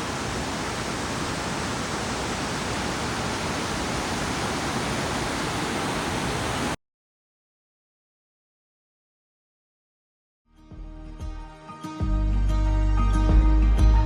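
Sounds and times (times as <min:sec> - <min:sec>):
waterfall rushing: 0:00.0 - 0:06.8.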